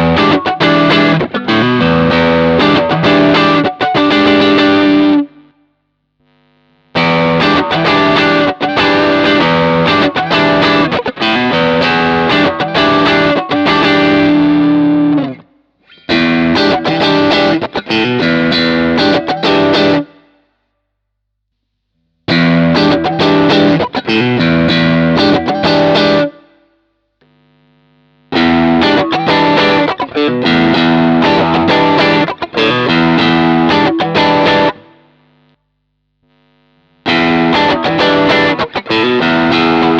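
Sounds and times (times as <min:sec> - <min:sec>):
distorted electric guitar: 0:00.0 - 0:05.6, 0:06.2 - 0:20.2, 0:22.3 - 0:26.5, 0:27.2 - 0:35.6, 0:36.3 - 0:39.9.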